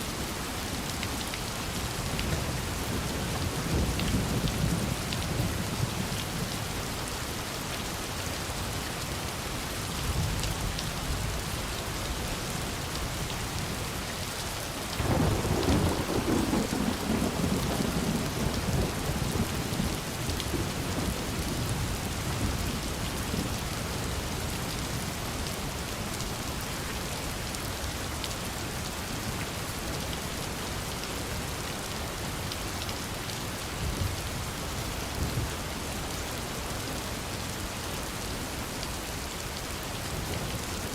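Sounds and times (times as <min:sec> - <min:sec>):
steady rain falling: 0:00.0 - 0:40.9
thunder rumbling: 0:15.0 - 0:22.6.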